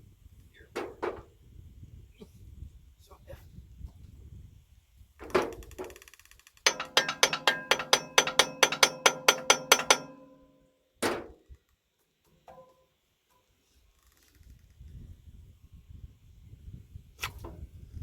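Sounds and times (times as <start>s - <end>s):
hammer striking metal: 6.7s - 11.3s.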